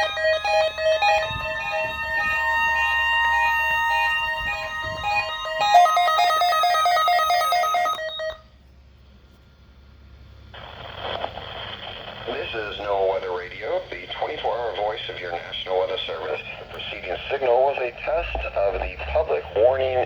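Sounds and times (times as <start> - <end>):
electronic emergency alert tones: 0.0 - 8.5.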